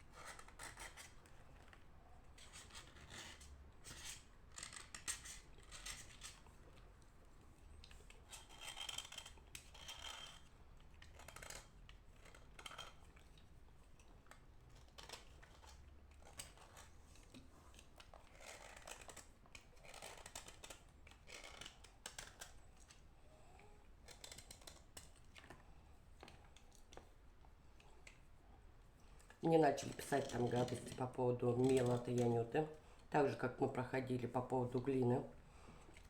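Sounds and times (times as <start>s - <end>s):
chalk scraping and crackling: 2.4s - 6.4s.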